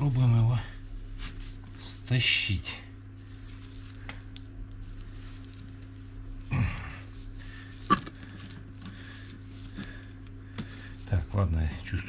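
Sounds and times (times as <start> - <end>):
steady hum: 0.0 - 12.0.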